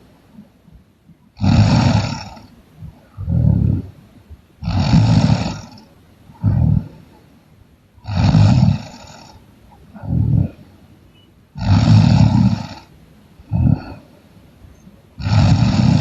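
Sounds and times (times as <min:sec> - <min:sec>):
soft breath sound: 0:00.0 - 0:07.4, 0:08.2 - 0:16.0
person snoring loudly: 0:01.4 - 0:02.5, 0:03.2 - 0:03.9, 0:04.6 - 0:05.8, 0:06.4 - 0:07.0, 0:08.0 - 0:09.4, 0:10.0 - 0:10.6, 0:11.6 - 0:12.9, 0:13.5 - 0:14.0, 0:15.2 - 0:16.0.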